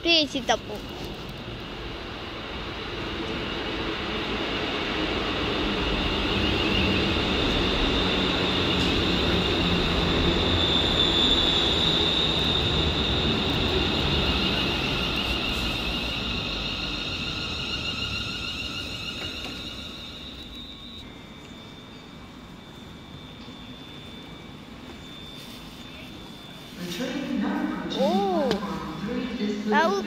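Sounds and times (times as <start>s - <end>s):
train wheels rumbling on rails: 0.0s - 21.1s
high-pitched squeal: 5.8s - 21.1s.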